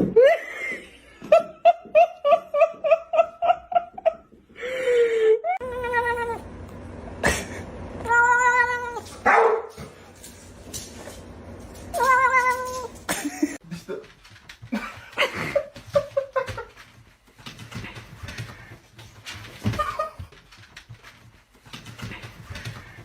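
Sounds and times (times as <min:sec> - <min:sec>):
cat meowing: 0:08.0 - 0:09.1, 0:11.9 - 0:12.9.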